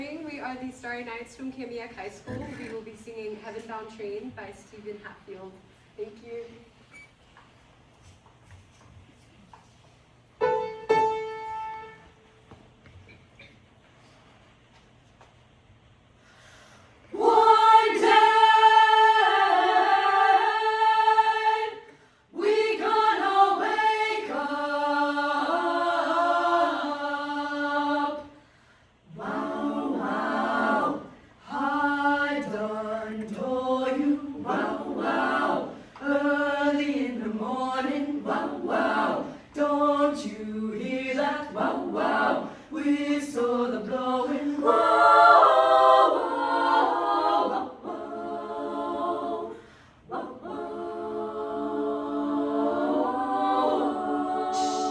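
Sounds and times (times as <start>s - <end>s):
vocal ensemble singing a cappella: 16.2s - 54.9s.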